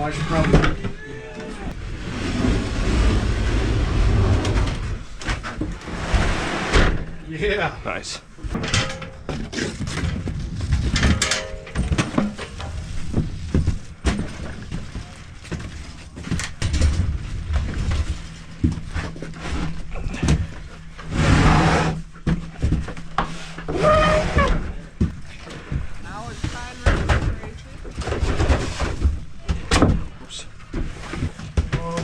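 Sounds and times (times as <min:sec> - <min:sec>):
rushing scrape: 0:01.8 - 0:05.1, 0:05.8 - 0:06.8, 0:21.0 - 0:22.0
equipment knocking and clattering: 0:08.4 - 0:20.9.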